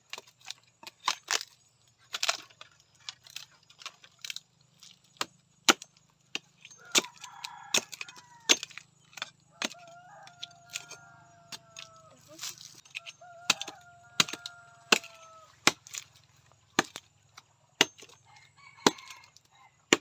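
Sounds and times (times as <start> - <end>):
dry wood and twigs snapping: 0.1 - 20.0
rooster crowing: 6.8 - 8.6, 9.5 - 12.3, 13.0 - 15.6, 18.2 - 19.8.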